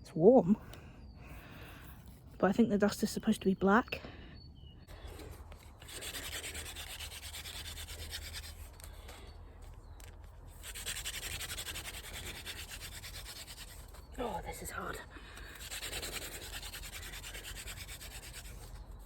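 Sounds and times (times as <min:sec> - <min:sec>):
wooden spindle grinding in hearth board: 0:04.9 - 0:19.0.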